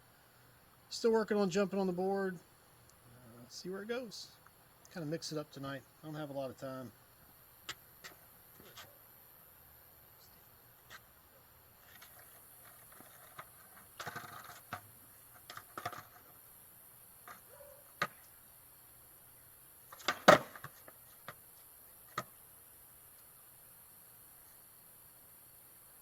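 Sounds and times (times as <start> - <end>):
skateboard wheels rattling: 11.8 - 16.4, 19.9 - 21.4
skateboard knocks and clacks: 11.9 - 16.3, 19.9 - 21.4.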